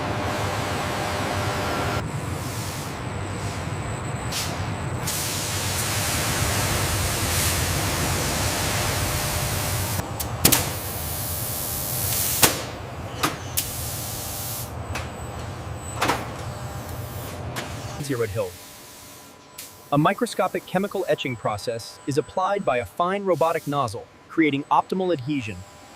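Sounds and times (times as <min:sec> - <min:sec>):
steady hissing spray: 0:18.0 - 0:21.1, 0:23.2 - 0:24.0.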